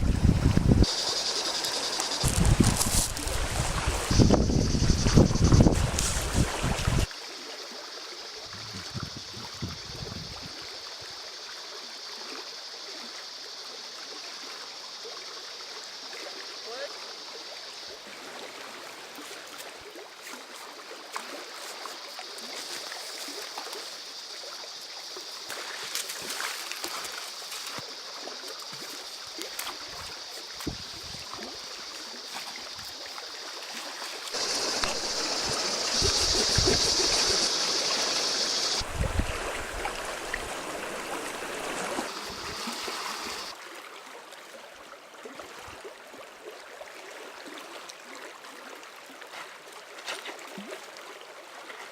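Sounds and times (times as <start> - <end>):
river water rushing: 31.3 - 44.4.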